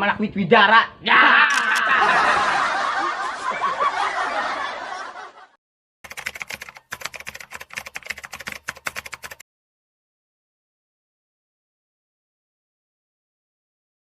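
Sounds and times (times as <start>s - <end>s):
people laughing: 1.2s - 5.6s
rapid clicking: 6.0s - 9.4s.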